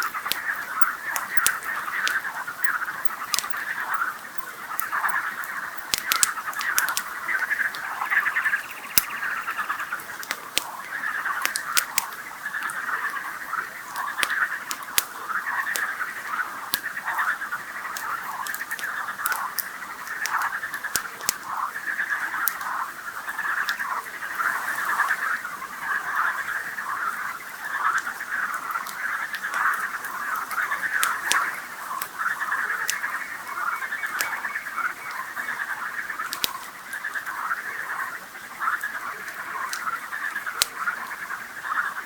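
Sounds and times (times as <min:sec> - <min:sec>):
campfire popping and crackling: 0:00.0 - 0:42.0
frogs chorus: 0:00.0 - 0:42.0.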